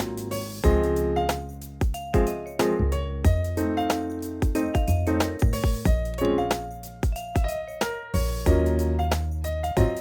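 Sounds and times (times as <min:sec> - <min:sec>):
piano tune over bass beat: 0:00.0 - 0:10.0.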